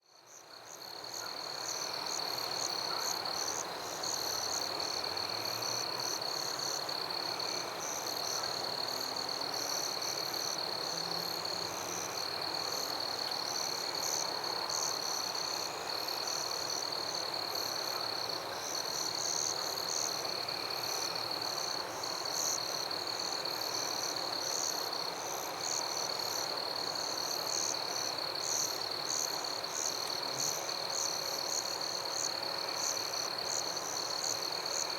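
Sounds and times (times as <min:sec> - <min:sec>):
dense hiss of insect calls: 0:00.0 - 0:34.9
pulsing cricket chirps: 0:11.2 - 0:34.9.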